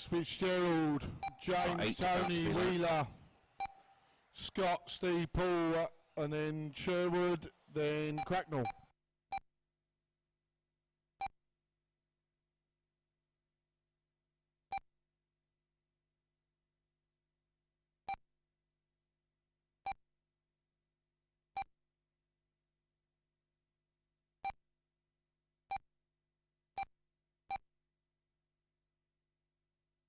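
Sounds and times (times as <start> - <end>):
short electronic beeps: 1.0 - 3.0, 3.6 - 3.9.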